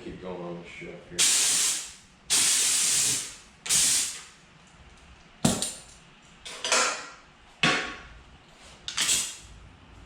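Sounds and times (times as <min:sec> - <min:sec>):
compressed air hissing: 0:01.2 - 0:04.3.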